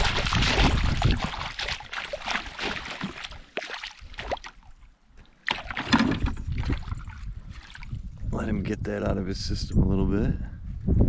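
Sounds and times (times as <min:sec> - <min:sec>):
water plops and drips: 0:00.0 - 0:08.0
fish thrashing in water: 0:00.0 - 0:08.1.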